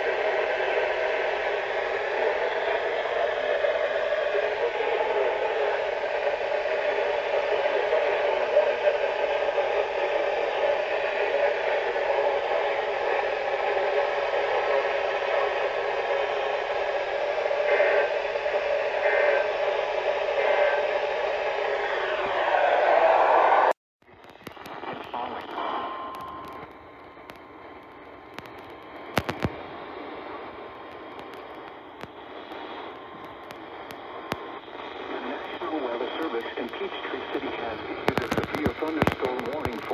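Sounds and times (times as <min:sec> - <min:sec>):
radio static hiss: 0:00.0 - 0:22.5, 0:24.0 - 0:39.9
crackles and pops: 0:24.0 - 0:39.9.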